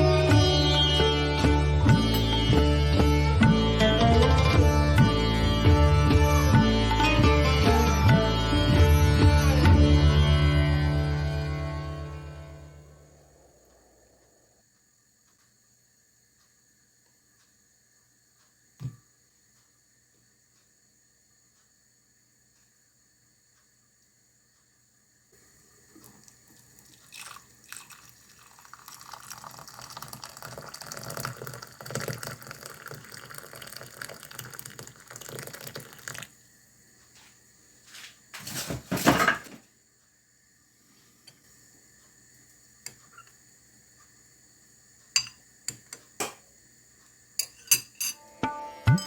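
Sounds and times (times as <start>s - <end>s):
liquid pouring and splashing: 25.9s - 36.3s.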